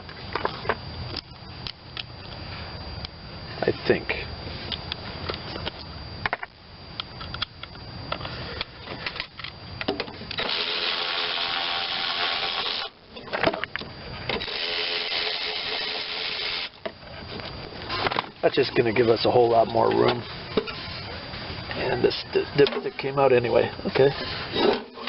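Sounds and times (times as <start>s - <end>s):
power driver whirring: 7.0s - 25.0s.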